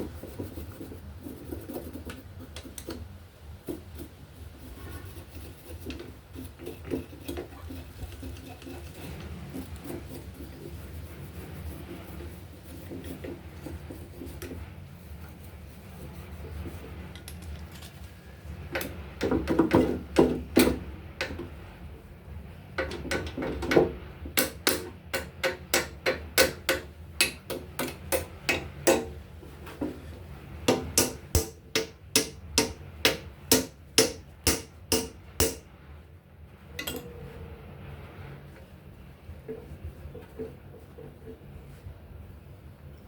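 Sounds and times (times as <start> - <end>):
hammer striking metal: 30.7 - 35.6.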